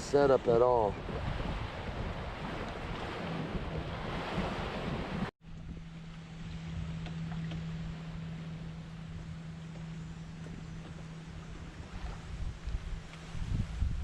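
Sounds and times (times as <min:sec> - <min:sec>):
small waves washing: 0:00.0 - 0:05.3, 0:07.2 - 0:14.0
wind buffeting microphone: 0:00.0 - 0:14.0
steady low hum: 0:05.4 - 0:13.9.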